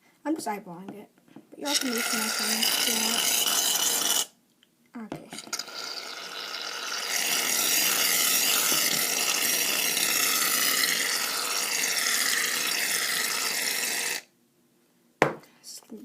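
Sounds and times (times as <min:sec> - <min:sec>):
aerosol can hissing: 0:01.6 - 0:04.3, 0:05.4 - 0:14.3.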